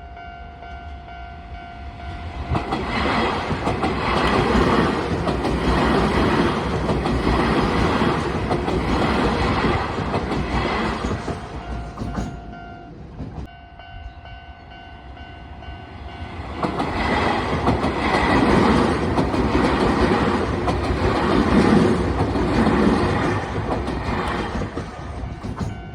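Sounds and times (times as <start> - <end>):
train wheels rumbling and clacking: 2.2 - 13.5, 16.2 - 25.9
level crossing warning tone: 11.4 - 16.5.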